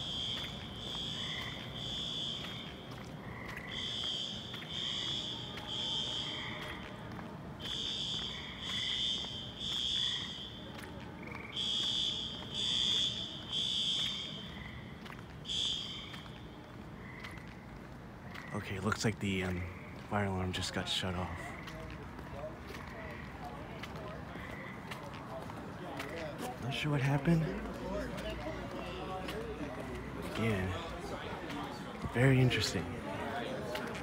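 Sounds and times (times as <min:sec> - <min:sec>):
fire alarm horn blasts: 0:00.0 - 0:02.9, 0:03.7 - 0:07.0, 0:07.6 - 0:14.7, 0:15.5 - 0:16.4.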